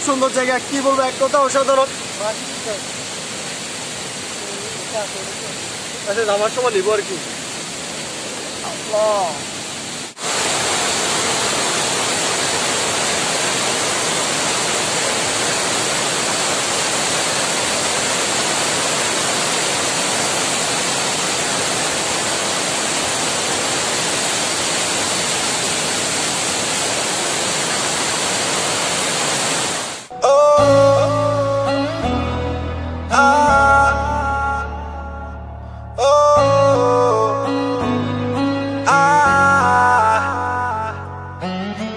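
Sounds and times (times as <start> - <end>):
waterfall rushing: 0.0 - 41.5
music: 30.1 - 41.9.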